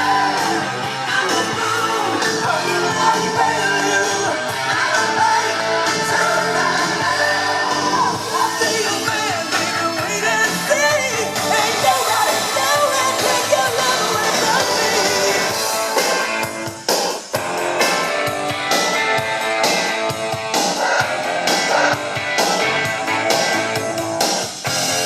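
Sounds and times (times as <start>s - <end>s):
person singing: 0.0s - 16.6s
rock band playing: 0.0s - 25.0s.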